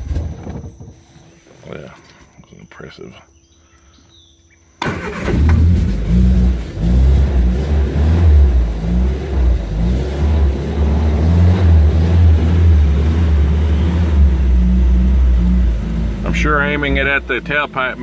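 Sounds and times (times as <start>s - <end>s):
car engine starting and running: 4.8s - 18.0s.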